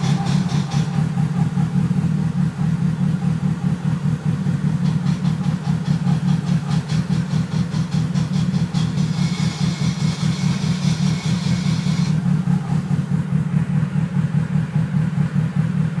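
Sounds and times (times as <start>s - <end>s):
fast rattle: 0.0s - 2.0s, 4.6s - 13.4s
car engine idling: 0.0s - 16.0s
high-pitched whine: 4.8s - 14.2s.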